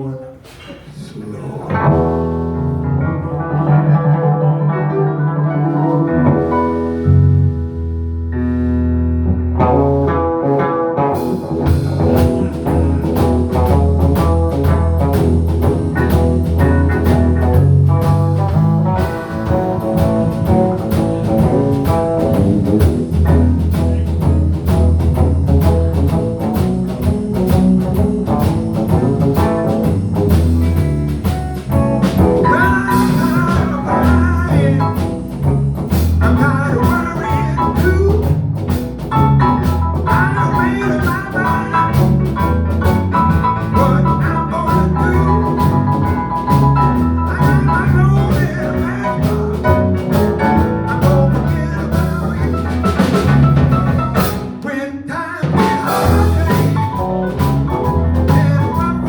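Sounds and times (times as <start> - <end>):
live blues band playing: 1.7 - 59.0
person singing: 32.0 - 35.3, 36.2 - 38.4, 40.0 - 53.2, 54.2 - 59.0.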